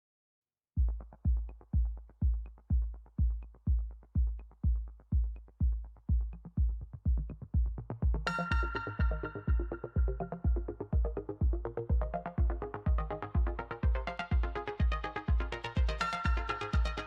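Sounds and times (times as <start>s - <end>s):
kick drum beat: 0.8s - 17.0s
sustained synth chords: 7.8s - 17.0s.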